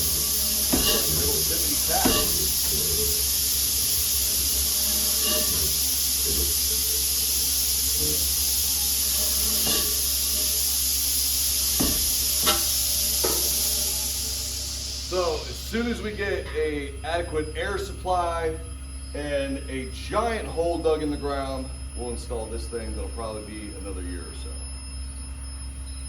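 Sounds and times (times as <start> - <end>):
compressed air hissing: 0.0 - 16.3.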